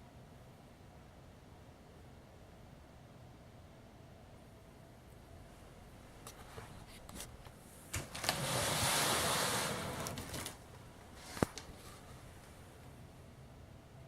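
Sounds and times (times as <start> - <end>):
rustling or scraping: 6.2 - 12.5.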